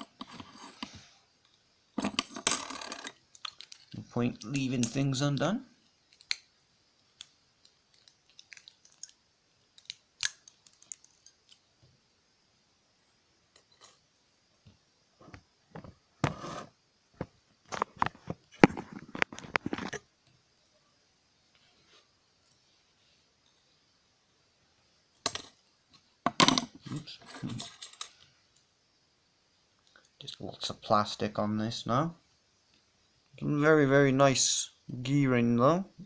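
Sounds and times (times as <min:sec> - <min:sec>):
crunching and snapping: 0:06.1 - 0:06.5, 0:07.2 - 0:09.2, 0:09.8 - 0:11.6.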